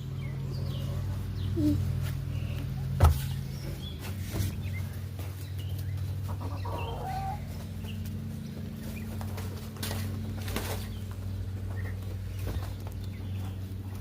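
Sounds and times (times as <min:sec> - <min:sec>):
steady low hum: 0:00.0 - 0:14.0
hens clucking softly: 0:05.8 - 0:14.0.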